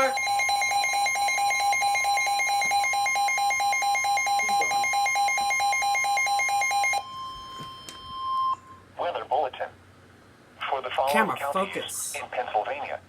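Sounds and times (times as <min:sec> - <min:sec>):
steady warning alarm tone: 0:00.0 - 0:08.9.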